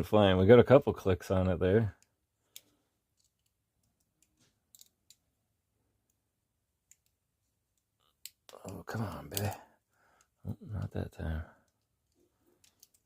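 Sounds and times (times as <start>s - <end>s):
metallic clicks of lock picking: 2.0s - 5.2s, 11.6s - 13.0s.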